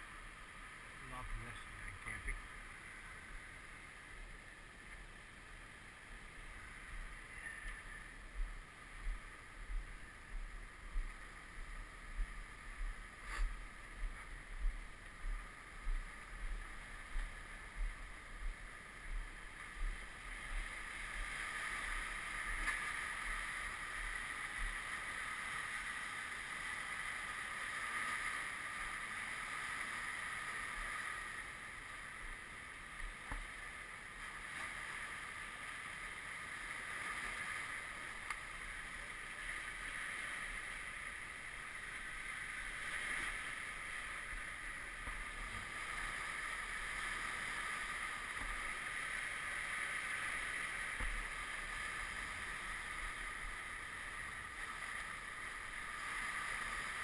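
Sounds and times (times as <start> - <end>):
lake water washing on shore: 0.0 - 57.0.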